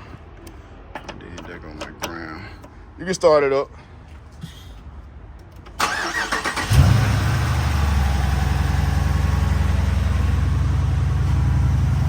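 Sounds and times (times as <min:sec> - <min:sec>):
car engine cranking and idling: 0:05.4 - 0:12.0.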